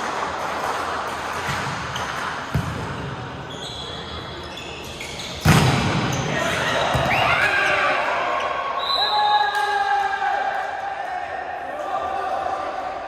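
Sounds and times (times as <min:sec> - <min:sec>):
hard hit on volleyball: 0:05.4 - 0:06.1.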